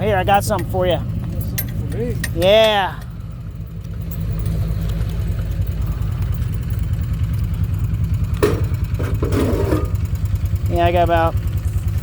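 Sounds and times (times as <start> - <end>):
vehicle engine idling: 0.0 - 12.0.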